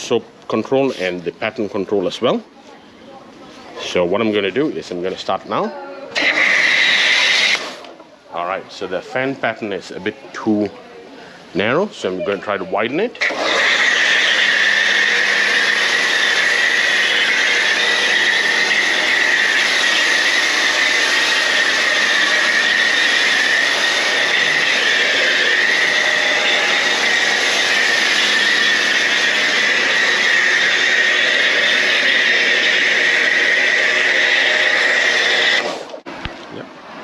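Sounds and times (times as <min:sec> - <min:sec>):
pressure washer spraying foam: 0:06.2 - 0:07.9, 0:13.2 - 0:36.0.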